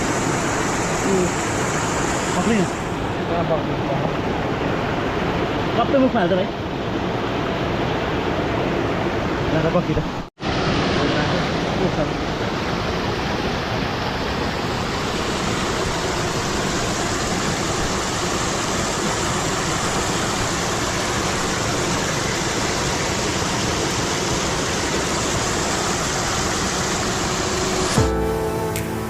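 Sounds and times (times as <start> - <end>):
rushing water: 0.0 - 29.0
music: 28.0 - 29.0.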